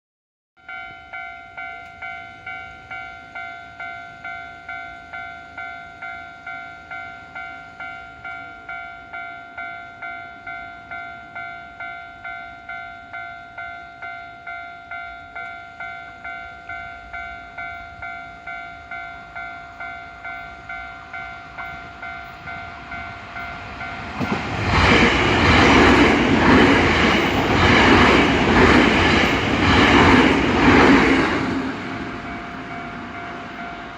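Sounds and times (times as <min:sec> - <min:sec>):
level-crossing bell ringing: 0:00.6 - 0:24.1
train passing with rumble: 0:01.2 - 0:33.9
train wheel clatter: 0:20.2 - 0:33.9.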